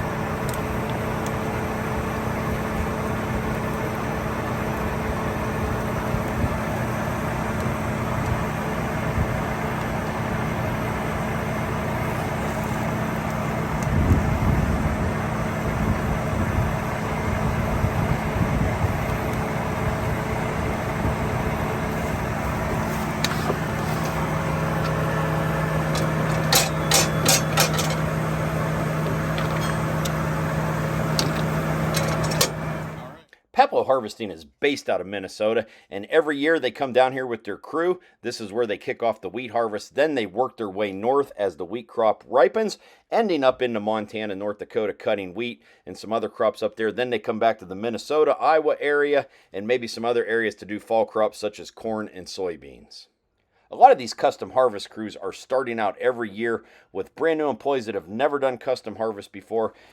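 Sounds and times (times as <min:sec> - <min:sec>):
diesel engine running: 0:00.0 - 0:33.2.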